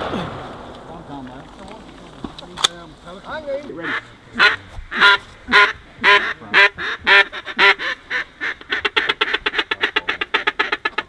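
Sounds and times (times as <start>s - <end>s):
duck call quacks: 3.8s - 11.0s
fast chattering duck call: 3.8s - 11.0s.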